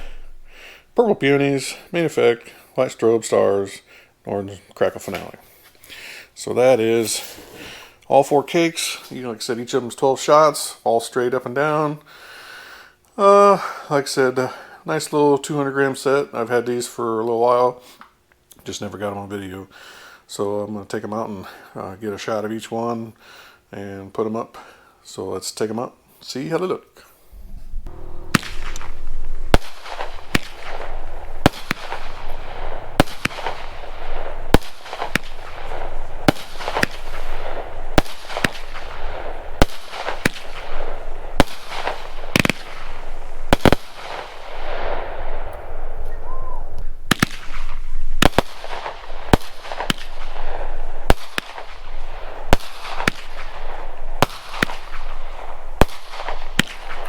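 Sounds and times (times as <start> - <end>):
rushing noisy haze: 27.3 - 54.3
firework cakes firing shots: 27.8 - 57.0.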